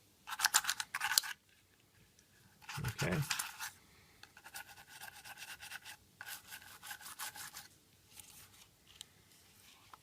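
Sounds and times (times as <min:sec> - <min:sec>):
toothbrush scrubbing: 0:04.4 - 0:07.7.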